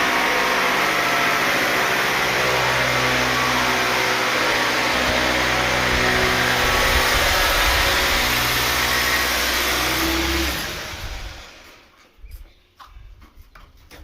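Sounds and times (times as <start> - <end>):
machine motor humming: 0.0 - 11.9.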